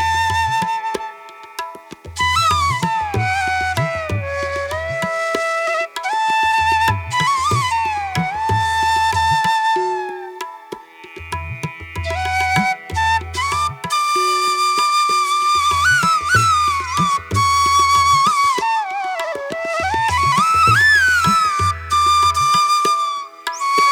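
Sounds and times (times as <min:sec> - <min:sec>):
sliding flute melody: 0:00.0 - 0:23.9
tabla-style drum hits: 0:01.6 - 0:05.4, 0:06.2 - 0:09.5, 0:10.6 - 0:13.9, 0:15.8 - 0:18.8.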